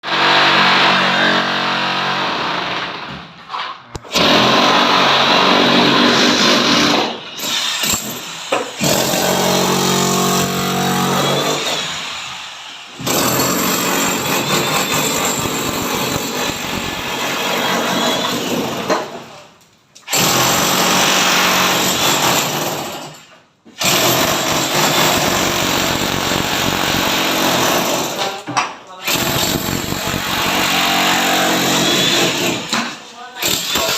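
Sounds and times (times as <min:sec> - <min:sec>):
power tool running: 0:07.4 - 0:14.2.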